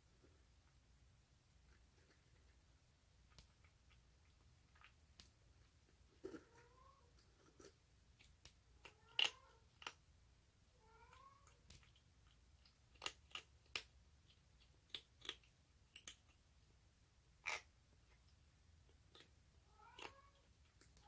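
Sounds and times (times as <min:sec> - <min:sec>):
kitten mewing: 0:08.8 - 0:09.9, 0:19.7 - 0:20.5.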